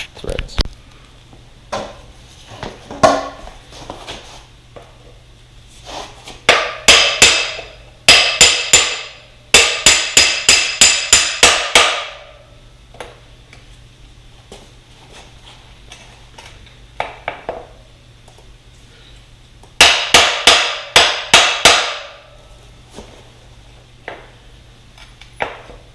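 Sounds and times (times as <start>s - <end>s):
hammer tapping metal punch: 6.5s - 12.3s, 19.8s - 22.2s.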